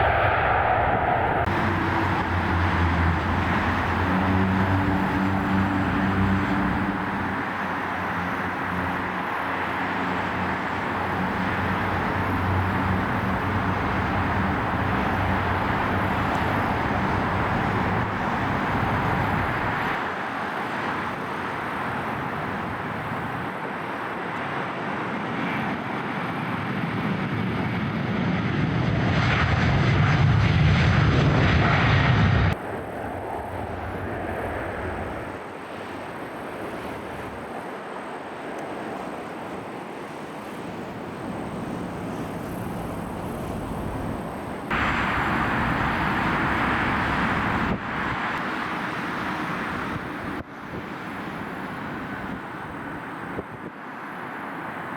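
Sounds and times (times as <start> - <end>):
steady rumble: 0.0 - 20.0, 28.1 - 35.5, 41.4 - 48.4
jet engines roaring: 0.0 - 54.9.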